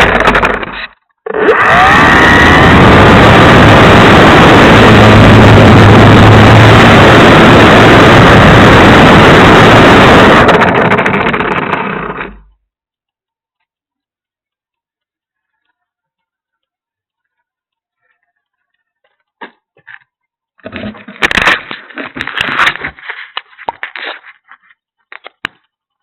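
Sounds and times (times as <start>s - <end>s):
model plane electric motor and propeller: 0.0s - 12.6s
rushing air: 1.6s - 11.0s.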